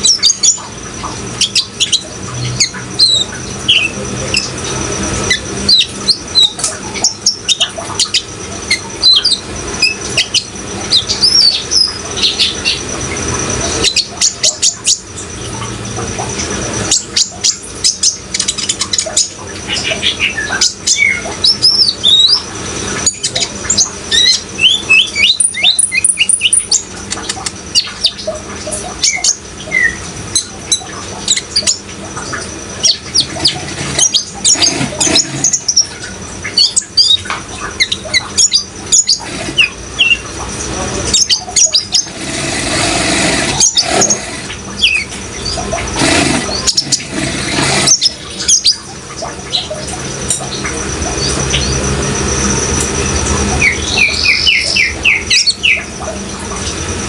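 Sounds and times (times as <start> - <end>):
running water hiss: 31.3 - 52.6.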